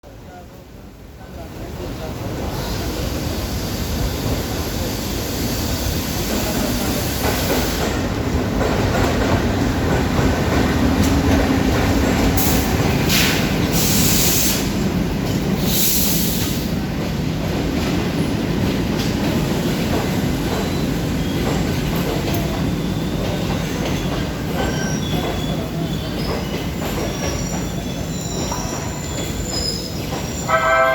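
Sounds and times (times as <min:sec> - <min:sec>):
train wheels rumbling on rails: 0:00.1 - 0:30.9
loud hiss bursts: 0:12.4 - 0:14.8, 0:15.6 - 0:16.8
train wheels squealing: 0:20.4 - 0:30.9.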